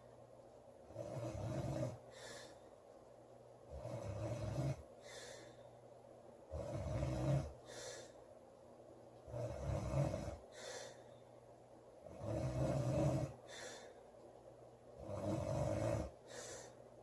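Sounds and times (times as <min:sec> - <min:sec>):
faint hissy breath: 0:00.0 - 0:17.0
girl snoring loudly: 0:00.9 - 0:02.0, 0:03.7 - 0:04.8, 0:06.5 - 0:07.6, 0:09.3 - 0:10.6, 0:12.0 - 0:13.4, 0:15.0 - 0:16.2.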